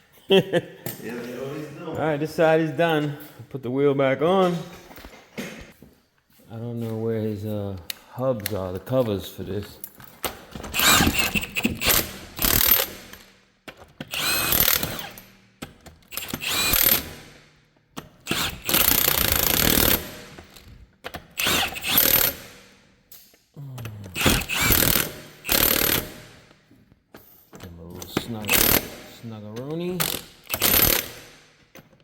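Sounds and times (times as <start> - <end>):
impact wrench bursts: 10.7 - 13.4, 14.0 - 22.9, 24.1 - 26.6, 28.0 - 31.7.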